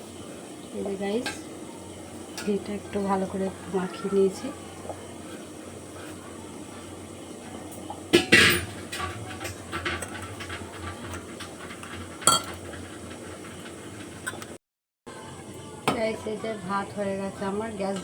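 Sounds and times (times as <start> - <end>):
metal utensils knocking on pot: 8.1 - 12.8.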